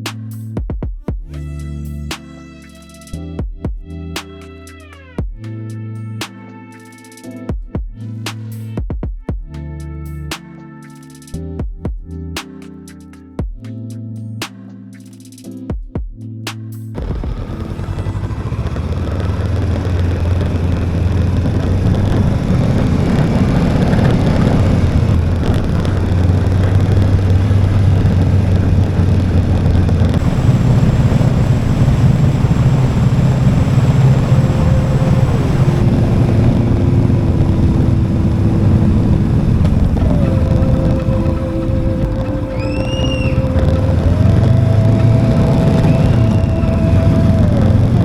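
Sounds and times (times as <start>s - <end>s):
motorcycle engine running: 17.0s - 48.0s
rush of wind noise: 17.0s - 48.0s.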